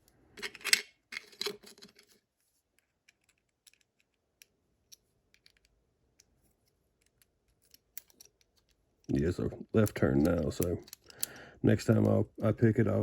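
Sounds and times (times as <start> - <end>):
lock metallic scraping and clicking: 9.8 - 11.4.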